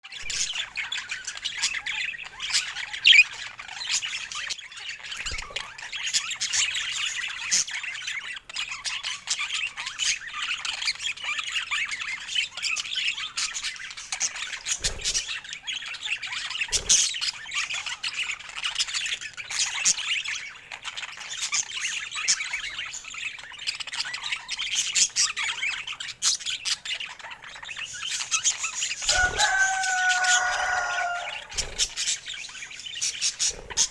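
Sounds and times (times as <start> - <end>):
budgerigars chattering: 0.2 - 33.9
loud bird squawk: 28.8 - 32.3.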